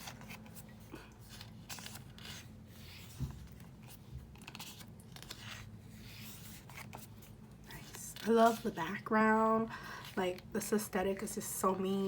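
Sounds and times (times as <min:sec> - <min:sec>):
paper rustling and sliding: 0:00.0 - 0:09.0.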